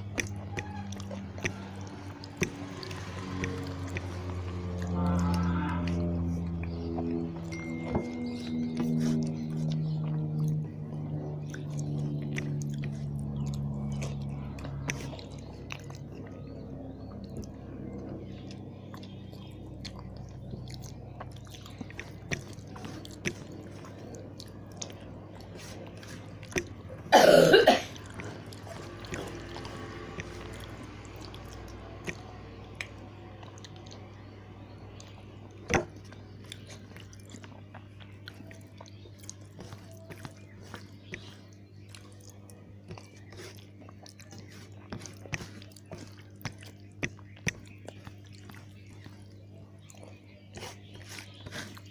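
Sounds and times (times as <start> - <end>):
wet mouth clicks and smacks: 0.0 - 4.9
person chewing food: 0.0 - 51.9.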